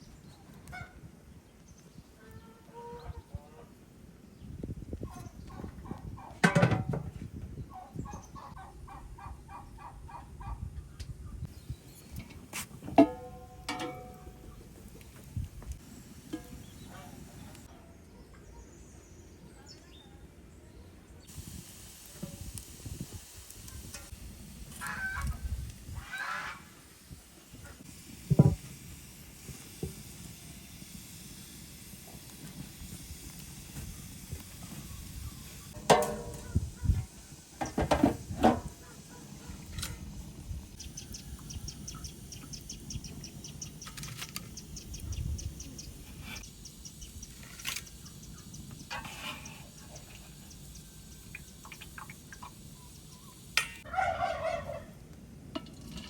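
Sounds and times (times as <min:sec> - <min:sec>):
birds calling: 0:07.7 - 0:12.5, 0:40.6 - 0:54.9
cooking knocks and clatters: 0:12.1 - 0:15.3, 0:35.7 - 0:36.7, 0:37.6 - 0:38.8.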